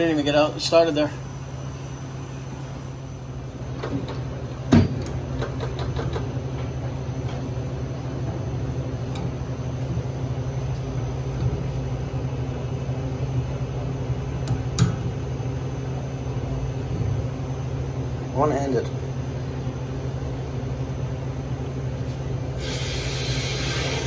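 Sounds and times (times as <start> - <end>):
steady low machine hum: 0.0 - 24.0
sharp clicks and knocks: 3.8 - 7.4.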